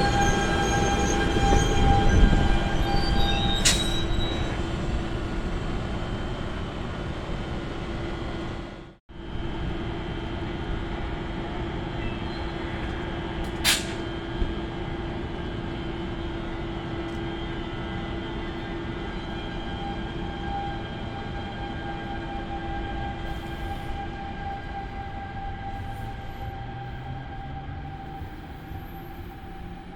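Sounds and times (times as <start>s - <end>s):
passenger train passing: 0.0s - 29.9s.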